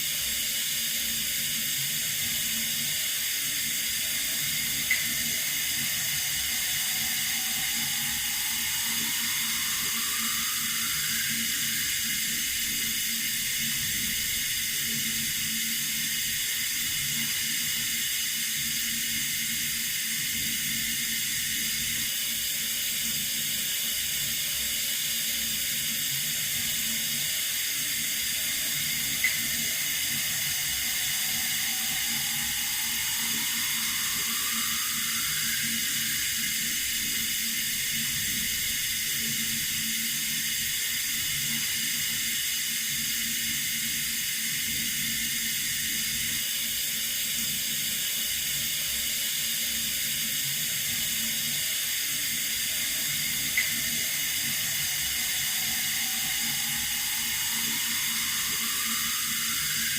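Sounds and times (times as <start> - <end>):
water running from a tap: 0.0 - 59.9
click: 29.2 - 29.4.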